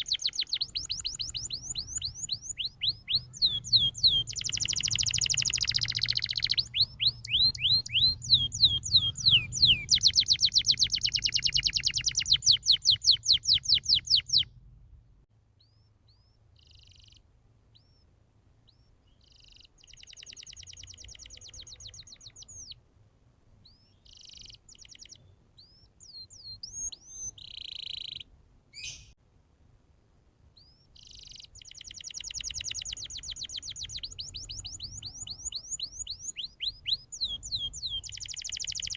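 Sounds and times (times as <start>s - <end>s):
canary singing trills: 0.0s - 14.5s, 15.6s - 22.8s, 23.6s - 29.2s, 30.6s - 38.9s.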